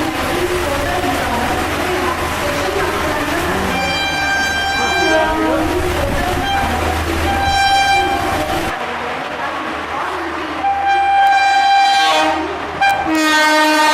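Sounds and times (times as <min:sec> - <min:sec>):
train rumbling past at speed: 0:00.0 - 0:13.9
electric locomotive horn blasts: 0:03.6 - 0:08.7, 0:10.6 - 0:13.9.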